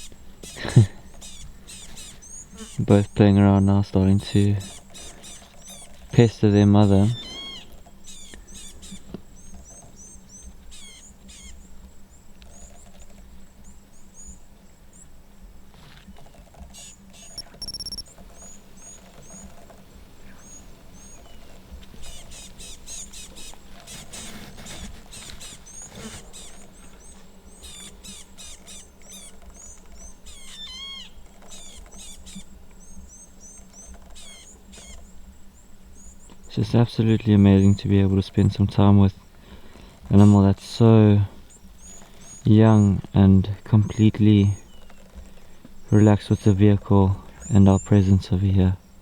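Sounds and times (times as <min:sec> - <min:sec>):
high-pitched chirps and squeaky calls: 0:00.0 - 0:03.2, 0:04.6 - 0:05.9, 0:07.0 - 0:11.6, 0:16.8 - 0:19.4, 0:25.1 - 0:35.0.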